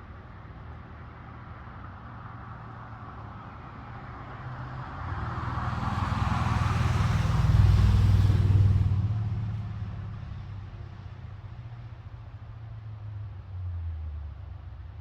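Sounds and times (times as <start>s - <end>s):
vehicle passing by: 4.4s - 11.7s.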